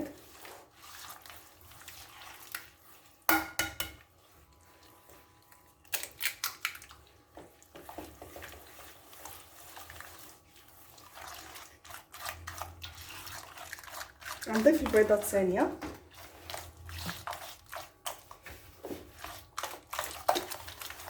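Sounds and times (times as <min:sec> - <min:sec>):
wet mixing sounds: 0:00.0 - 0:21.0
clicks and taps on mixing bowl: 0:03.3 - 0:04.0.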